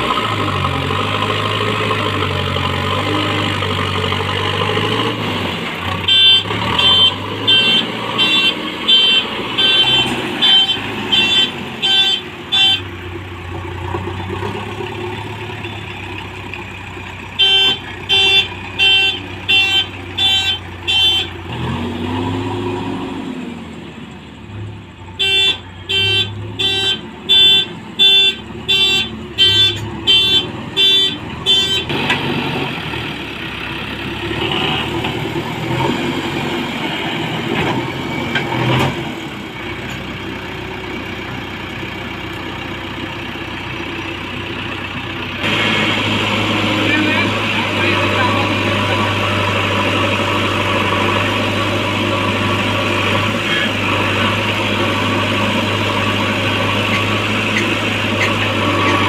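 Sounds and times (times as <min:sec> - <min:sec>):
backhoe diesel engine running: 0:00.0 - 0:59.0
reversing alarm beeping: 0:06.1 - 0:12.9.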